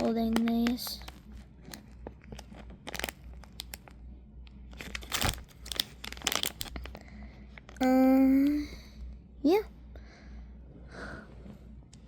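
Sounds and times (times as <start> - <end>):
plastic packaging crinkling: 0.0 - 4.0, 4.6 - 8.0.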